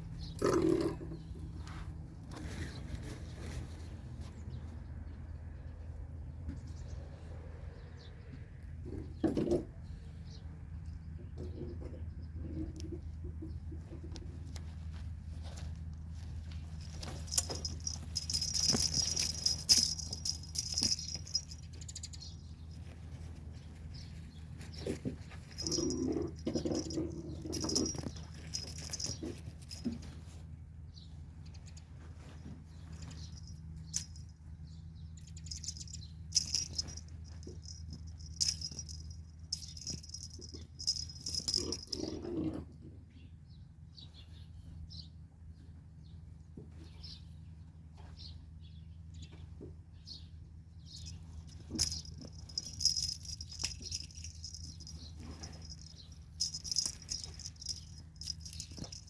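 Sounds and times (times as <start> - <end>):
small bell jingling: 16.6 - 23.3, 24.7 - 30.2, 31.6 - 34.4, 35.2 - 42.2, 50.9 - 59.0.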